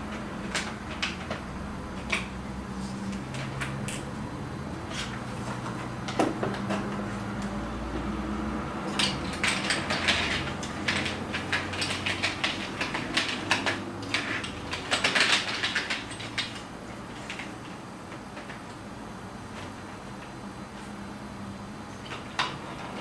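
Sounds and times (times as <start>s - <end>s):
plastic toy pieces clicking: 8.9s - 16.6s.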